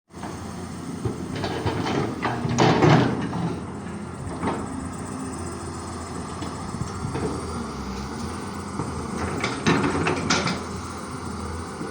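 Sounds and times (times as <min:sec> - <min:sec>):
excavator engine running: 0:00.1 - 0:11.9.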